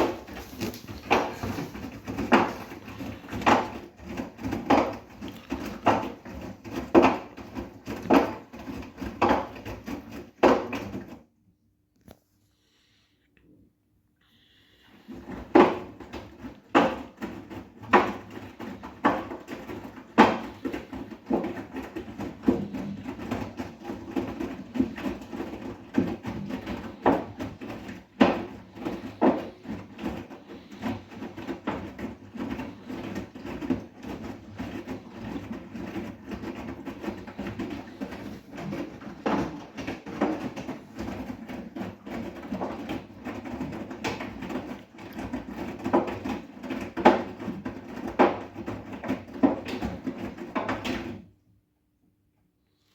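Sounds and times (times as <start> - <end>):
water sloshing: 0.0 - 7.4
washing machine drum turning: 0.0 - 11.1
wet laundry thumping: 0.0 - 11.2, 15.2 - 51.2.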